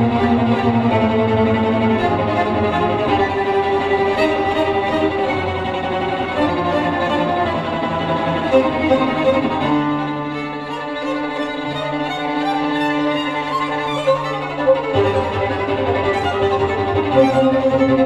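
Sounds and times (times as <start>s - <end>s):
violin and cello music: 0.0s - 18.0s.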